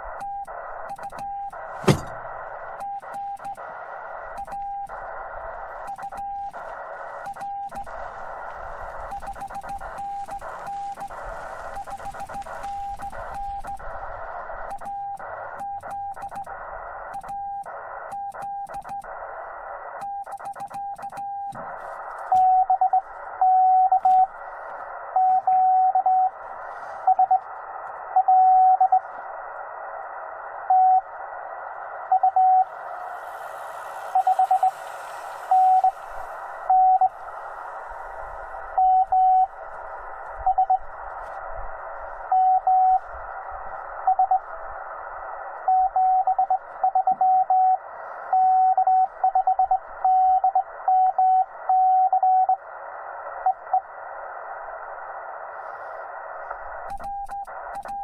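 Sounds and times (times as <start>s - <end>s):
receiver hiss: 0.0s - 58.0s
morse code tones: 36.6s - 37.2s.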